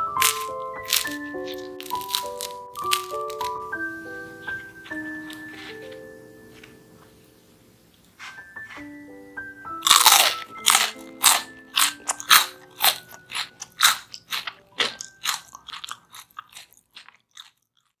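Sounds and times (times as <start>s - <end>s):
crunchy chewing of fried potatoes: 0.0s - 6.0s, 9.8s - 18.0s
soft background music: 0.0s - 16.6s.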